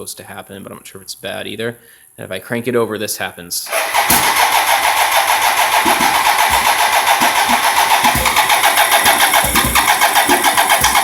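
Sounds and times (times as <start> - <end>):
clunky engine sounds: 3.7 - 11.0
starter motor cranking engine: 3.7 - 11.0
engine firing low thuds: 4.0 - 11.0.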